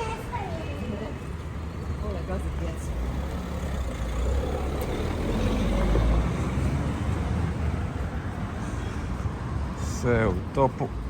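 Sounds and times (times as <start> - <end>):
vehicle engine passing by: 1.8 - 8.0.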